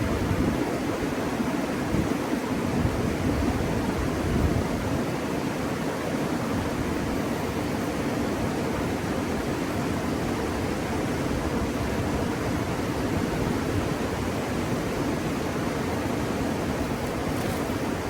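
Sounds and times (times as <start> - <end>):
river water rushing: 12.4 - 18.0.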